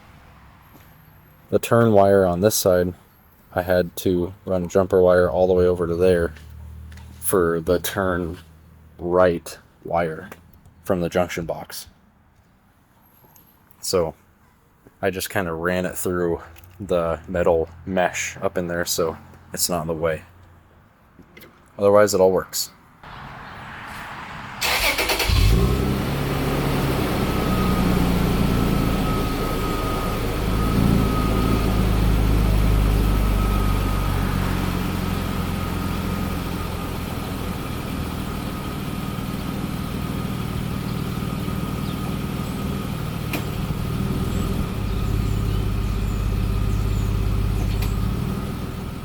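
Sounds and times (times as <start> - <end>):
car engine starting and idling: 23.1 - 49.0.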